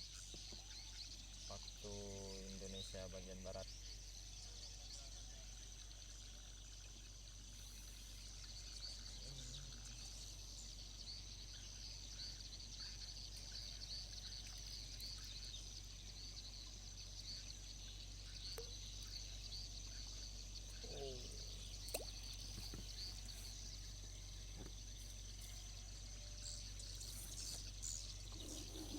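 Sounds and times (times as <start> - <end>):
high insect drone: 0.0 - 28.9
low steady hum: 0.0 - 28.9.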